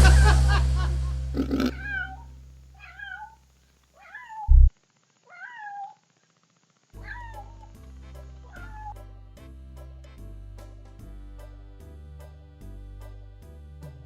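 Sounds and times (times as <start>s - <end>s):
kitten meowing: 1.4s - 2.2s, 2.8s - 3.4s, 4.0s - 4.7s, 5.3s - 6.0s, 7.0s - 7.6s, 8.5s - 9.0s
low thump: 4.5s - 4.7s.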